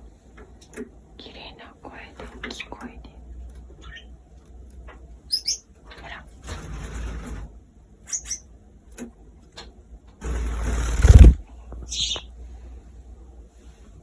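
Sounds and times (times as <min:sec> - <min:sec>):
small birds chirping: 0:02.4 - 0:04.2, 0:05.2 - 0:06.3, 0:08.1 - 0:08.5, 0:10.2 - 0:12.4
loud rushing noise: 0:10.2 - 0:11.4
rustling: 0:10.2 - 0:11.4.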